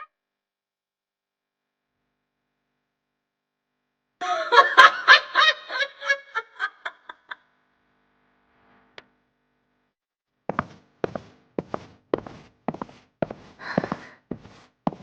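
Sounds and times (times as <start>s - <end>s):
person giggling: 4.2s - 7.4s.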